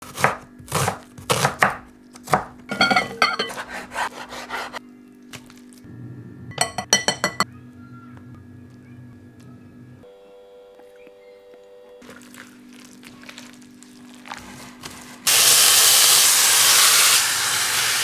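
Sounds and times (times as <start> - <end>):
knife chopping on cutting board: 0.0 - 4.8
utensils clinking against dishes: 2.7 - 3.9, 6.5 - 7.5.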